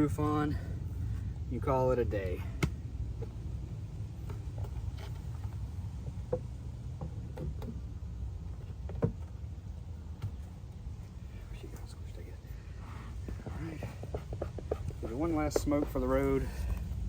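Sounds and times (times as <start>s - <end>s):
steady low rumble: 0.0s - 17.0s
wooden hive roof knocks and taps: 4.2s - 9.4s, 13.2s - 16.9s.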